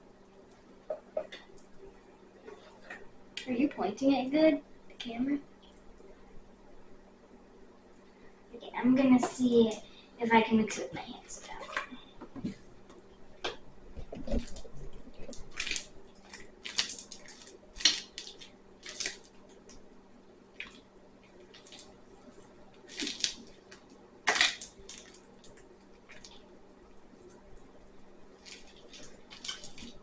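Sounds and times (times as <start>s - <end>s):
slime squelching: 14.0s - 19.9s, 20.5s - 30.0s.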